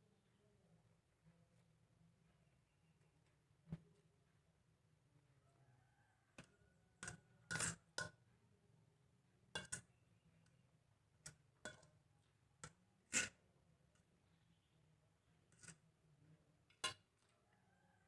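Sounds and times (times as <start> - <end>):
cutlery clinking on a plate: 7.0 - 8.2, 9.6 - 9.9.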